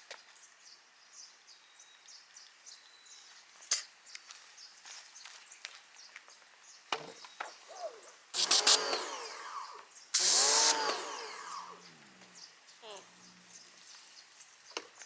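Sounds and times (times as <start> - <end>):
pressure washer spraying: 8.4 - 11.9.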